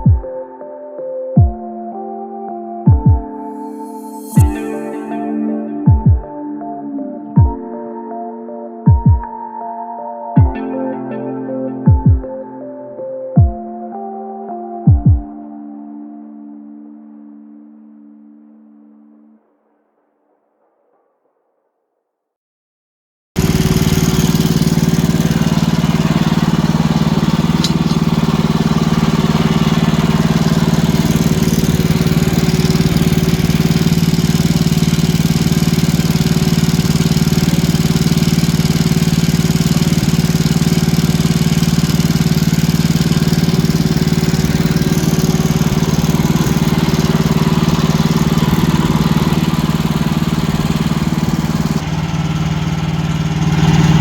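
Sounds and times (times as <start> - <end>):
sawmill engine running: 23.4 - 54.0.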